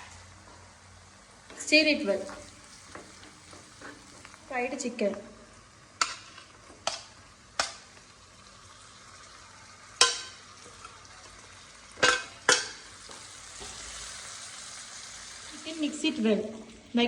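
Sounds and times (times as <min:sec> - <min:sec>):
soft sizzle: 0:00.0 - 0:17.0
spatula knocking and scraping pan: 0:06.0 - 0:07.8, 0:10.0 - 0:10.4, 0:12.0 - 0:13.8.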